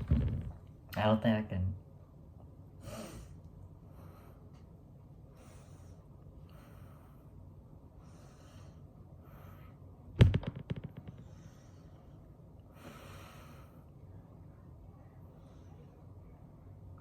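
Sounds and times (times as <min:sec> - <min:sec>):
sudden loud knock: 0:10.2 - 0:11.2.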